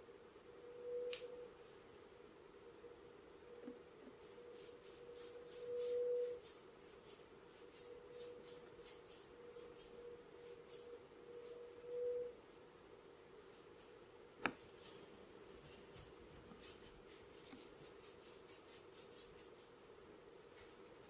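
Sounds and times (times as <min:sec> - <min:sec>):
steady hum: 0:00.0 - 0:18.3
scratchy rubbing on skin and hair: 0:04.2 - 0:11.8, 0:14.6 - 0:15.0, 0:15.6 - 0:19.8.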